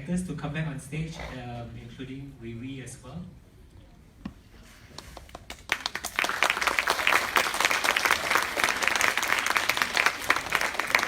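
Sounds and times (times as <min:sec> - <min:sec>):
audience applauding: 0:05.3 - 0:11.0.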